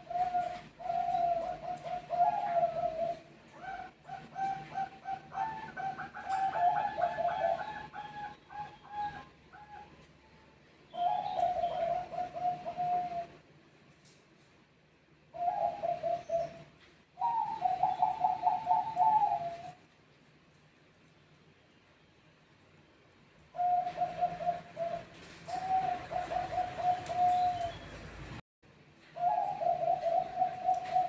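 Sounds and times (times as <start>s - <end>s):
doves cooing: 0.0s - 10.0s, 11.0s - 13.4s, 15.3s - 19.8s, 23.5s - 28.1s, 29.2s - 31.0s.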